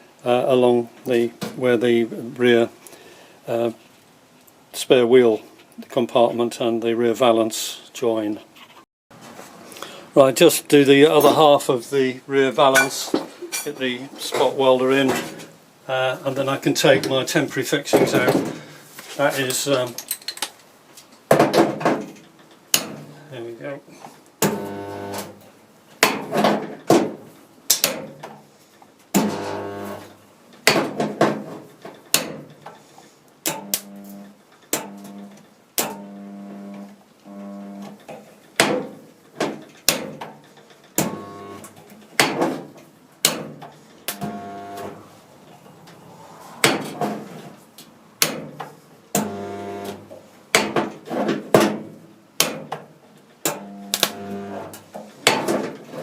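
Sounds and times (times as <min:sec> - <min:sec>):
spot welder electrical hum: 0:24.4 - 0:25.5, 0:29.2 - 0:30.2, 0:33.5 - 0:38.0, 0:41.0 - 0:41.8, 0:44.1 - 0:45.2, 0:49.2 - 0:50.1, 0:53.4 - 0:54.8.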